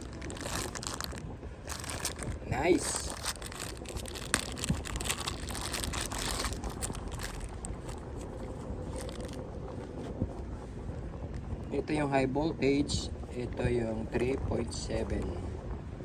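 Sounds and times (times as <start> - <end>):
plastic packaging crinkling: 0.0 - 9.5.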